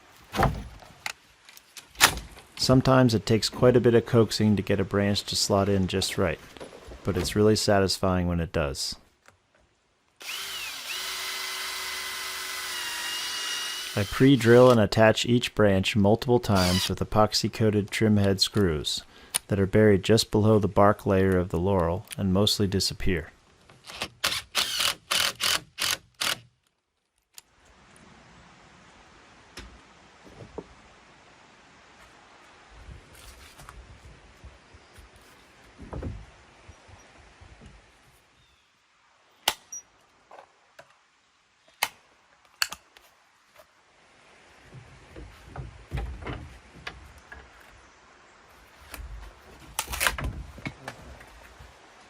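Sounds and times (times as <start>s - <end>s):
branches scraping against twigs: 33.0s - 33.8s
rustling scrape: 33.1s - 33.7s
light wooden knocks: 35.6s - 36.3s, 44.6s - 47.8s.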